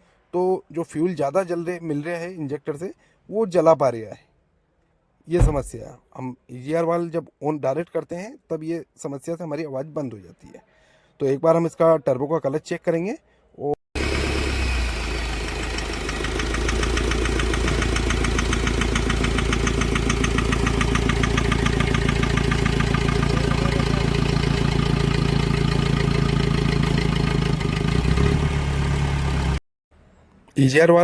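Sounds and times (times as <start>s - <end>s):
diesel engine idling: 14.0s - 29.6s
rapid ticking engine knock: 15.7s - 27.8s.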